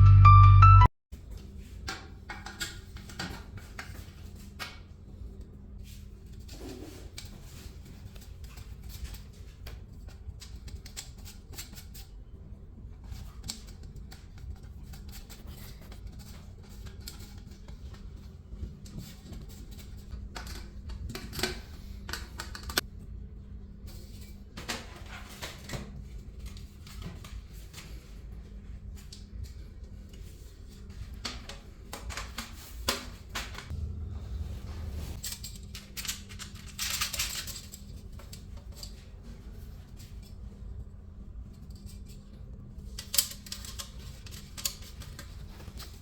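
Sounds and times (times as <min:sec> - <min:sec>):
steady low hum: 0:33.5 - 0:35.7
clicks of parts and packaging: 0:35.2 - 0:39.0, 0:42.9 - 0:46.0.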